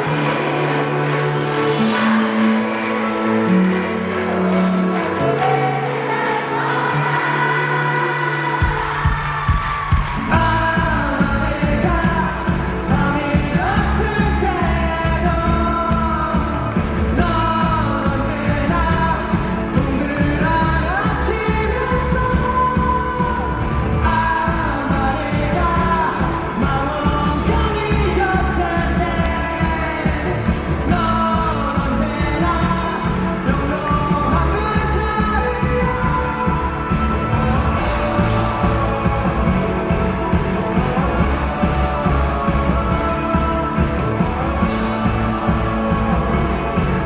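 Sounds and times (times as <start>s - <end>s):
live pop-rock band: 0.0s - 47.0s
man singing: 0.0s - 47.0s.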